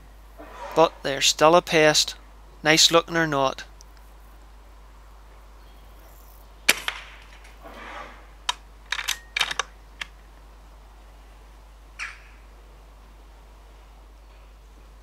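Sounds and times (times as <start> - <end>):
rustle: 0.0 - 15.0
air rifle shot crack: 6.7 - 7.3.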